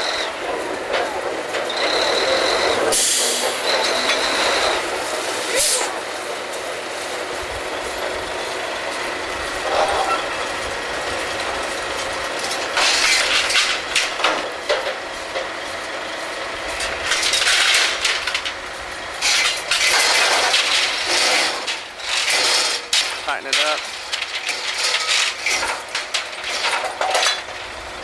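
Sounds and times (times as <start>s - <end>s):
drilling rig machinery running: 0.0s - 28.0s
loud metal-on-metal bursts: 19.2s - 27.6s.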